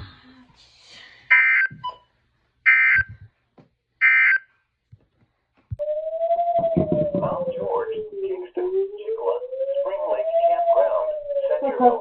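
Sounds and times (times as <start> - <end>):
steady tone rising in pitch: 5.8 - 12.0.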